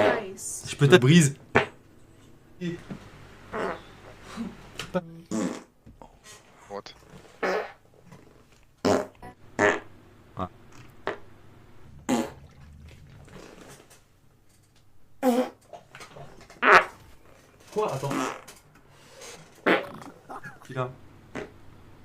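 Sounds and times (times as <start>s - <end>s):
man farting: 1.5s - 1.8s, 3.5s - 4.0s, 5.3s - 5.8s, 7.2s - 14.0s, 15.2s - 15.7s, 16.5s - 17.0s, 17.9s - 18.6s, 19.5s - 21.6s.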